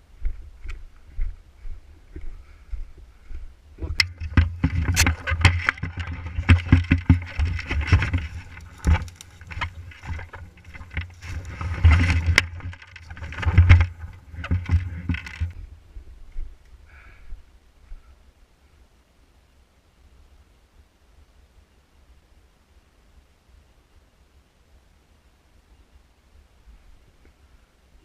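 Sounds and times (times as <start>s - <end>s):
rustling: 0.3s - 17.0s
knocks and clicks: 3.9s - 15.6s.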